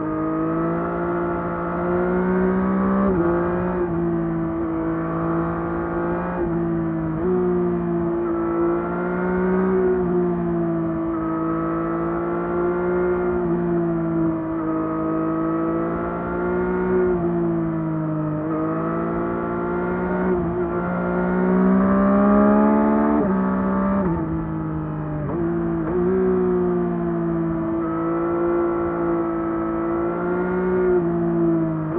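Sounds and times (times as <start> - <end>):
motorcycle engine revving: 18.6 - 24.6.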